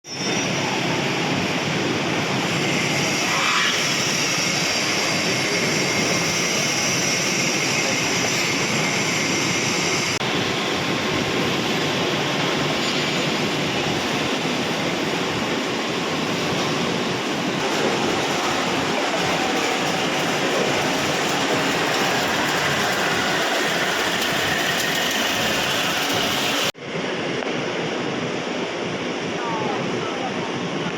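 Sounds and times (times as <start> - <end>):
high whine: 0.1 - 30.1
furnace blower rushing: 0.4 - 26.8.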